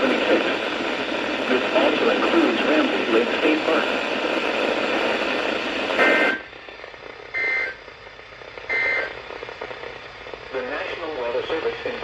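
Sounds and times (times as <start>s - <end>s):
radio static hiss: 0.0s - 12.0s
two-tone data bursts: 7.4s - 7.8s, 8.7s - 9.2s.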